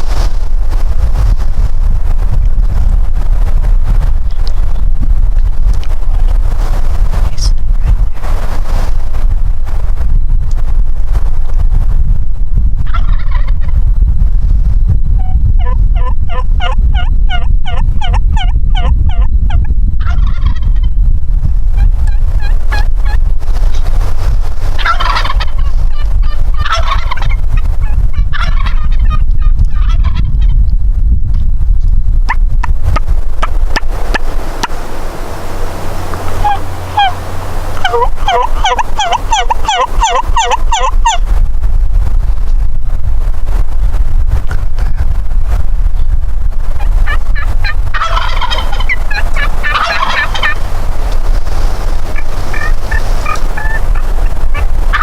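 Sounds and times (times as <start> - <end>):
wind rumble on microphone: 0.0 - 55.0
turkey gobbling: 12.8 - 13.7, 15.2 - 20.9, 21.8 - 23.2, 24.7 - 30.5, 35.7 - 41.2, 46.8 - 50.7, 52.0 - 55.0
hen turkey yelps: 15.6 - 20.9, 24.8 - 30.3, 36.4 - 37.2, 37.8 - 41.2, 47.0 - 50.6, 52.1 - 55.0.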